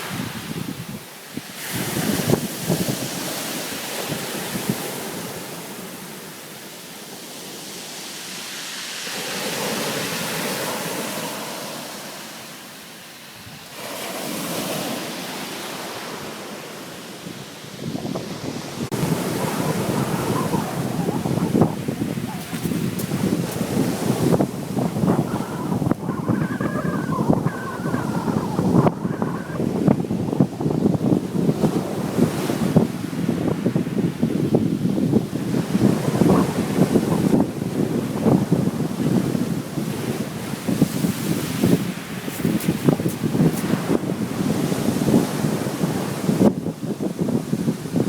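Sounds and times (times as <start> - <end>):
surf washing onto beach: 0.0 - 48.0
wind buffeting microphone: 17.3 - 48.0.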